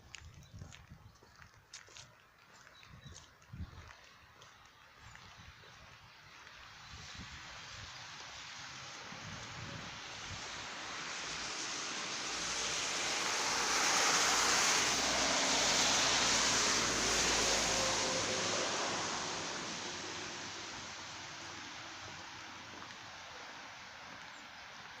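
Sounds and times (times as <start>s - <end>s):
vehicle driving past: 10.2s - 22.4s.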